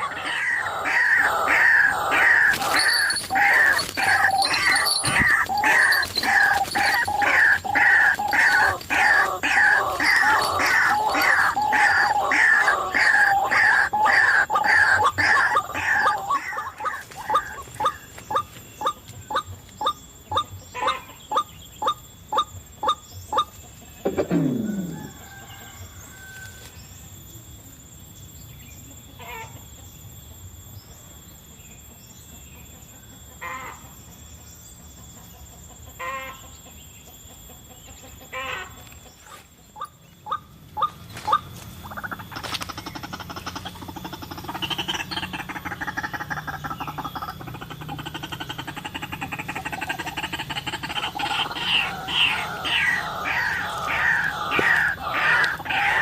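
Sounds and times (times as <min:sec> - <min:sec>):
bird clucking calls: 0:00.0 - 0:26.4, 0:37.9 - 0:56.0
rough rustling: 0:02.2 - 0:13.1.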